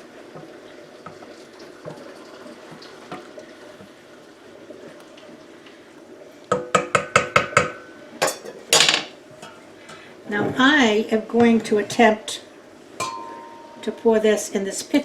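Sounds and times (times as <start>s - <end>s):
brine stirring in a pot: 0.0s - 5.4s, 13.0s - 15.0s
spoon knocking against pot: 6.5s - 9.6s, 13.0s - 13.9s.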